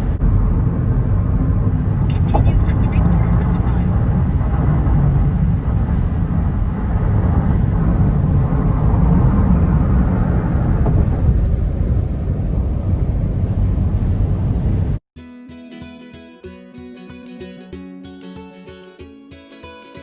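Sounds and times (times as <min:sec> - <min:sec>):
steady loud low noise: 0:00.0 - 0:15.0.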